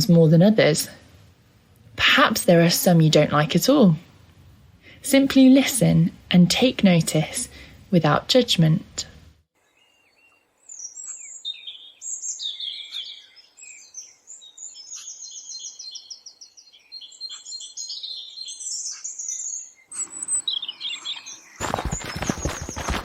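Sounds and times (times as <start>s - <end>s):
songbirds singing: 9.6s - 23.0s.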